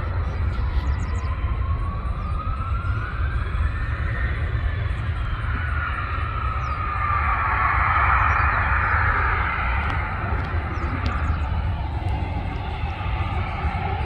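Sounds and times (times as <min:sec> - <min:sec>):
jet airliner passing: 0:00.0 - 0:14.0
steady low rumble: 0:00.0 - 0:14.0.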